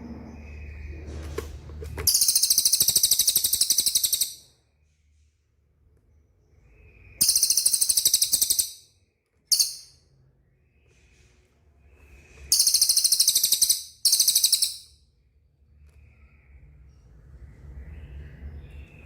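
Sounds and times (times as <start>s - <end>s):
bird rattling trill: 2.0s - 4.4s, 7.2s - 8.9s, 9.5s - 10.0s, 12.5s - 14.9s.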